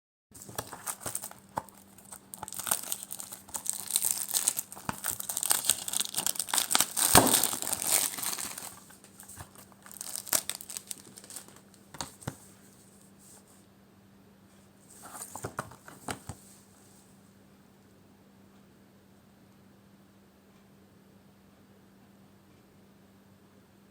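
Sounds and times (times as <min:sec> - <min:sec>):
plastic wrap crinkling and tearing: 0:00.4 - 0:12.3
handling clicks and rustles: 0:00.4 - 0:12.5.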